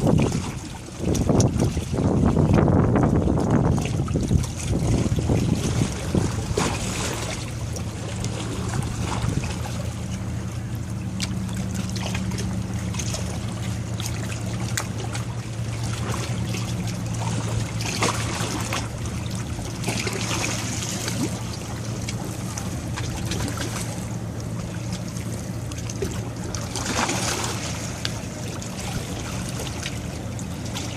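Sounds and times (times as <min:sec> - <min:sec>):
wind buffeting microphone: 0:00.0 - 0:10.8
ship low drone: 0:00.0 - 0:30.9
water washing: 0:00.0 - 0:30.9.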